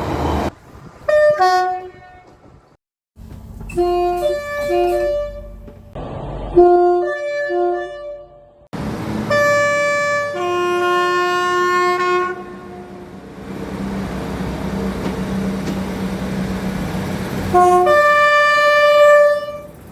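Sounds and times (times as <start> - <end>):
train running by droning: 0.0 - 6.8, 8.8 - 19.9
train horn two-tone blast: 1.1 - 2.4, 6.6 - 8.6, 9.3 - 13.2, 17.5 - 19.7.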